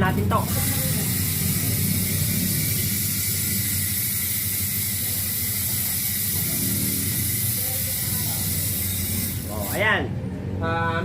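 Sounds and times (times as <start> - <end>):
bicycle hub freewheel clicking buzz: 0.0 - 10.0.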